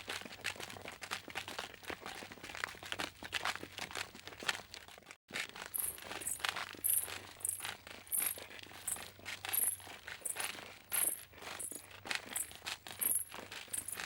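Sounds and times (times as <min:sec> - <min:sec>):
footsteps crunching on loose surface: 0:00.0 - 0:14.0
jingling footsteps: 0:05.6 - 0:14.0.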